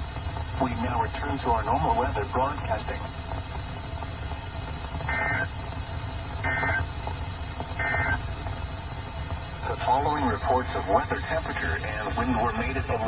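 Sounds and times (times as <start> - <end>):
radio reception hiss: 0.0 - 13.0
two-tone data bursts: 5.0 - 5.7, 6.3 - 7.0, 7.8 - 8.4, 9.4 - 13.0.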